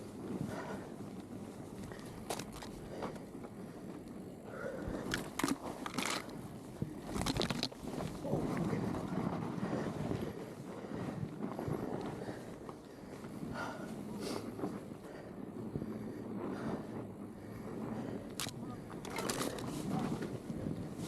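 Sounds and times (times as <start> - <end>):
snow crunching: 18.4 - 21.0.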